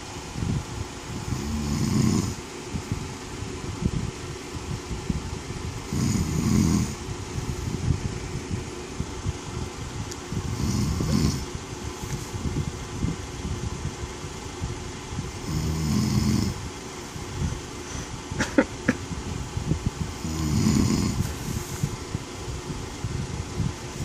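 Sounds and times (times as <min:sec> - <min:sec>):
man snoring: 0:01.2 - 0:02.4, 0:05.9 - 0:07.0, 0:10.5 - 0:11.5, 0:15.4 - 0:16.6, 0:20.2 - 0:21.4.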